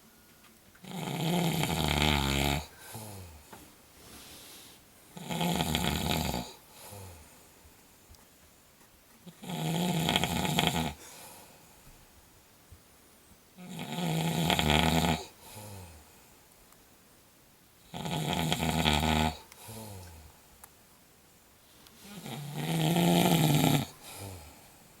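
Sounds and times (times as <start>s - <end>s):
woman snoring: 0.8s - 3.4s, 5.2s - 7.2s, 9.4s - 11.0s, 13.6s - 16.0s, 17.9s - 20.2s, 22.0s - 24.6s
soft breaths: 2.6s - 5.2s, 5.8s - 9.3s, 10.9s - 13.5s, 15.3s - 16.8s, 19.3s - 20.8s, 21.5s - 25.0s.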